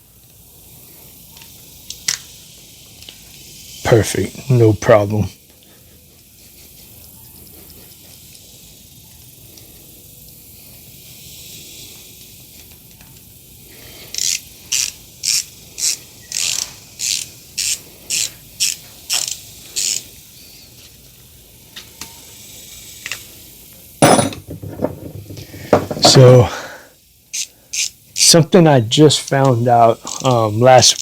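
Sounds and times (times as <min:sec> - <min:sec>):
ratchet screwdriver clicking: 0:14.1 - 0:20.1.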